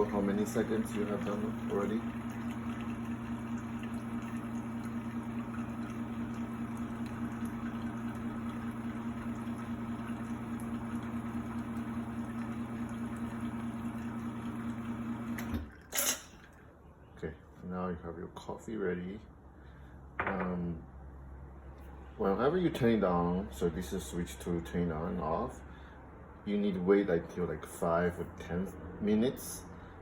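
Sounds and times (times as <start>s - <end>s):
espresso machine pump humming: 0.0s - 16.6s.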